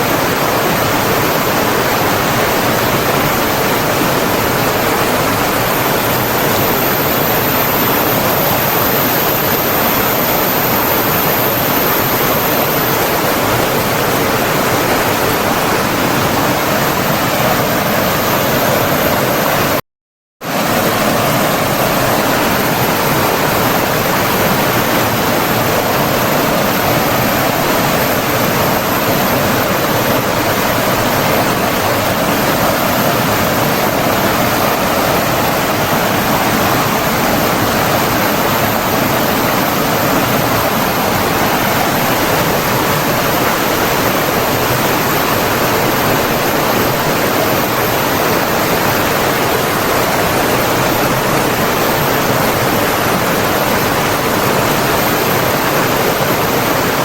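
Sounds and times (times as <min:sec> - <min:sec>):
flowing water rushing: 0:00.0 - 0:19.8, 0:20.4 - 0:57.0.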